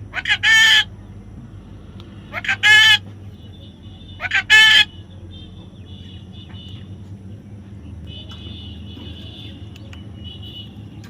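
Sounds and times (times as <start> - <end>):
loud bird call: 0.1 - 0.9, 2.3 - 3.1, 4.2 - 4.9.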